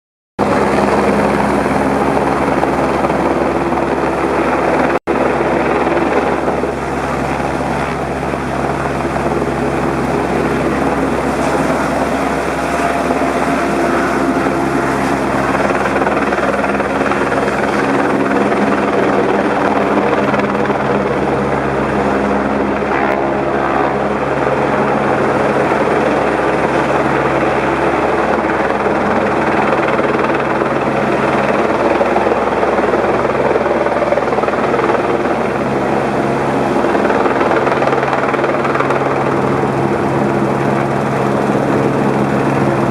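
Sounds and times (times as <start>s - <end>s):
helicopter engine and rotor: 0.4s - 42.9s.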